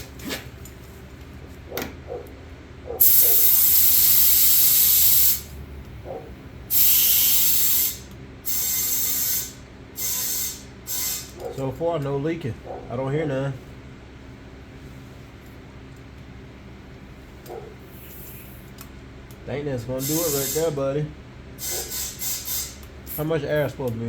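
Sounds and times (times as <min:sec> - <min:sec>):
compressed air hissing: 0:03.0 - 0:05.6, 0:06.7 - 0:11.3, 0:20.0 - 0:20.8, 0:21.6 - 0:23.3.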